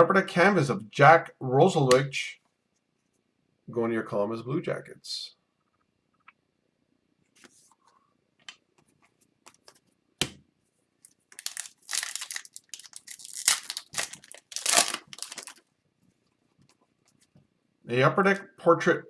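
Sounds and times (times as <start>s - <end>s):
foil wrapper crinkling and tearing: 11.3s - 15.6s.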